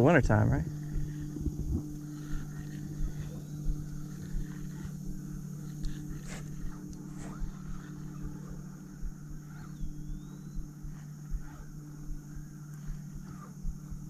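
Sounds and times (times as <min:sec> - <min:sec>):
wind on microphone: 0:00.0 - 0:05.2
small boat motor humming: 0:00.0 - 0:14.0
bird chirp: 0:07.4 - 0:11.7.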